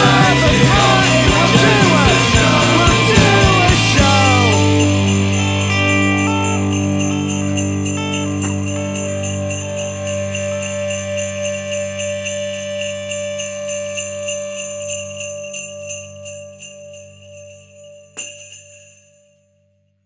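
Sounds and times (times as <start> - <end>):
held music chord: 0.0 - 13.4
sleigh bells shaken: 0.0 - 19.3.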